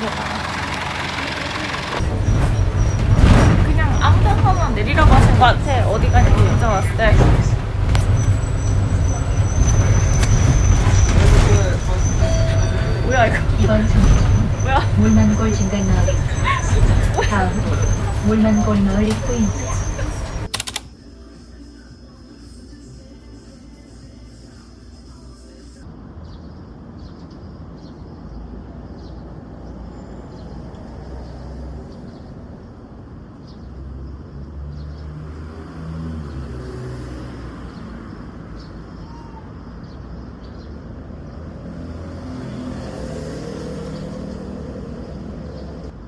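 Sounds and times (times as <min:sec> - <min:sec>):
bus diesel engine droning: 0:00.0 - 0:20.5
road rumble: 0:00.0 - 0:46.0.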